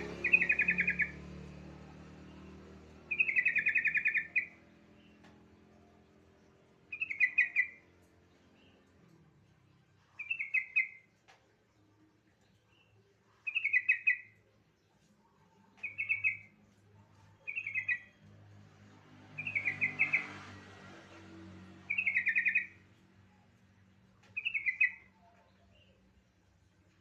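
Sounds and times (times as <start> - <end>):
bird chattering calls: 0.0 - 1.1, 3.1 - 4.6.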